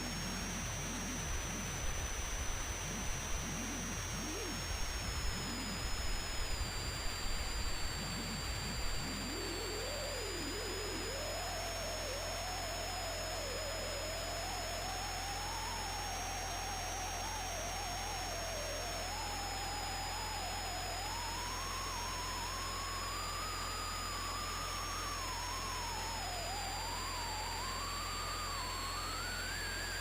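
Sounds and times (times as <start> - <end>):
wavering theremin-like tone: 0.0 - 12.8, 23.3 - 30.0
constant low buzz: 0.0 - 30.0
faint high whines: 0.0 - 30.0.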